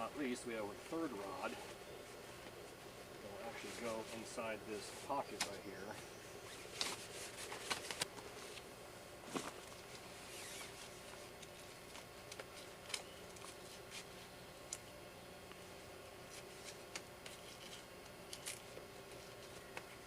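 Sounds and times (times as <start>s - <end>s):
nylon fabric rustling: 9.2s - 11.1s.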